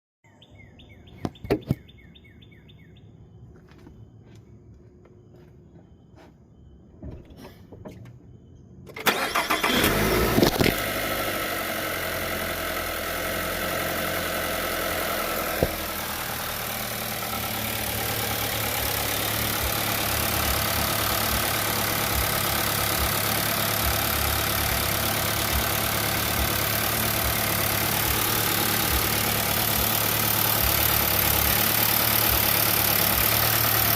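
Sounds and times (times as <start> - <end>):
car engine starting and idling: 8.8 - 33.9
engine hiss: 9.0 - 10.2.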